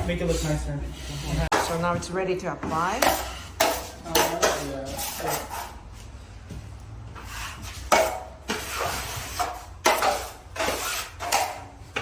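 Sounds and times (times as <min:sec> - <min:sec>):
knife scraping metal pan: 0:03.0 - 0:05.8, 0:07.3 - 0:11.7.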